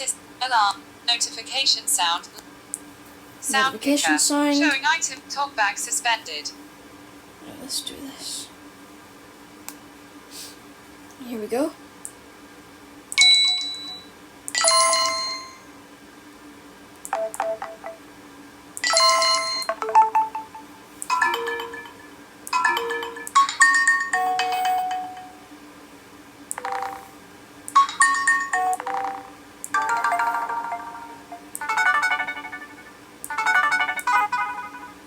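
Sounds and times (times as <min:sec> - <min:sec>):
phone notification chimes: 0:14.6 - 0:15.6, 0:17.2 - 0:18.0, 0:18.9 - 0:25.5, 0:26.6 - 0:27.2, 0:27.8 - 0:35.0.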